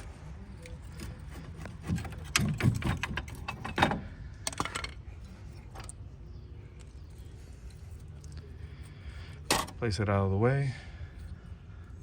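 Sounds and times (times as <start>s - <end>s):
metal clicks and clatter: 0.6s - 5.0s.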